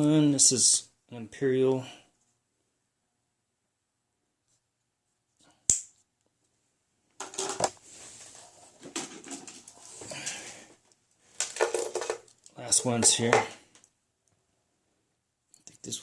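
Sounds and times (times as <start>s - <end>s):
rustling and small clicks: 5.9s - 14.4s.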